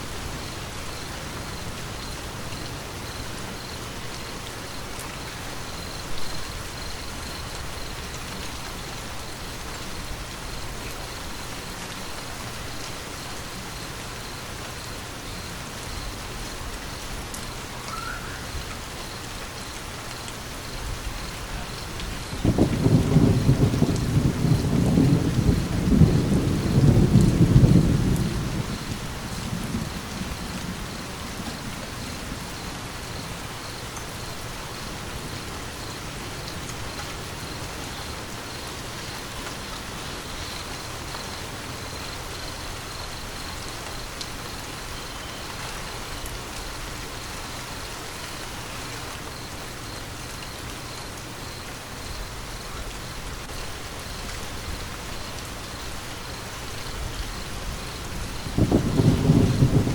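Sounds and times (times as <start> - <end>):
rain falling: 0.0 - 59.9
thunder rumble: 20.7 - 38.2, 51.5 - 59.9.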